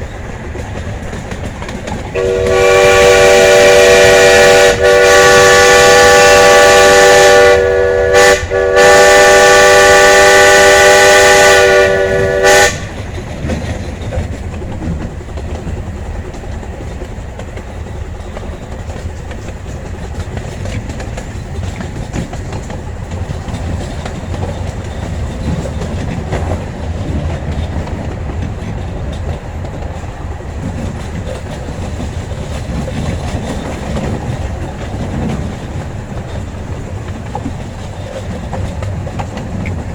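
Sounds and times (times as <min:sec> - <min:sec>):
train clickety-clack on rails: 0:00.0 - 0:39.9
steam locomotive chime whistle: 0:02.1 - 0:13.0.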